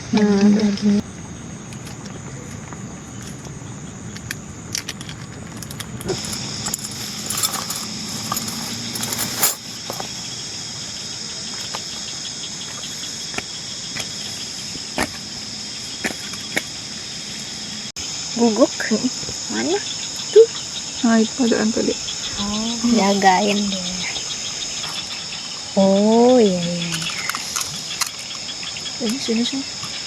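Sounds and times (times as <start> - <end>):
insect chorus: 0.0 - 30.0
light clicks and clinks: 4.1 - 10.2.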